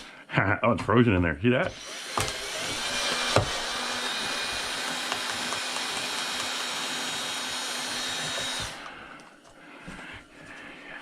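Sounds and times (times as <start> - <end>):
power drill motor whining: 1.7 - 9.0.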